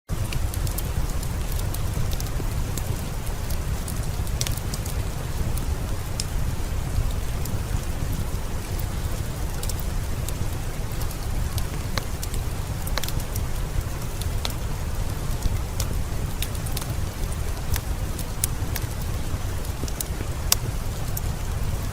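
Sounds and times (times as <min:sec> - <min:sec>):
heavy rain falling: 0:00.1 - 0:21.9
sharp ticks and pops: 0:00.2 - 0:06.4, 0:08.7 - 0:09.9, 0:10.9 - 0:14.8, 0:15.4 - 0:21.4.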